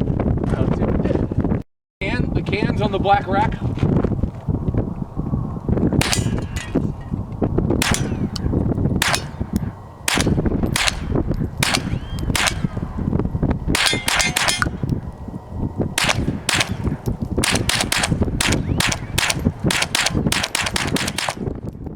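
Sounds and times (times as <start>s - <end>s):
wind rumble on microphone: 0.0s - 21.9s
gunshots: 6.0s - 6.6s, 7.8s - 8.4s, 9.0s - 9.4s, 10.0s - 12.8s, 13.7s - 14.8s, 16.0s - 21.5s.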